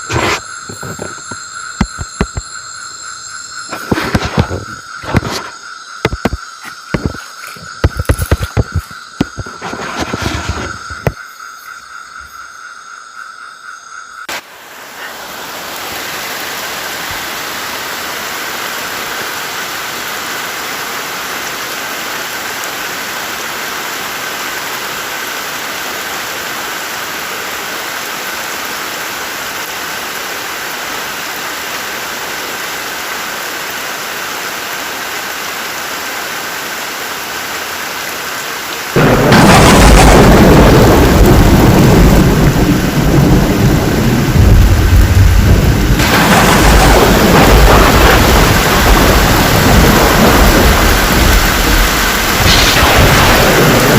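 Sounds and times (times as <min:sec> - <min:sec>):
heavy rain falling: 0:00.0 - 0:11.8, 0:14.2 - 0:53.9
thunderclap rumbling: 0:03.6 - 0:11.2, 0:38.9 - 0:53.9.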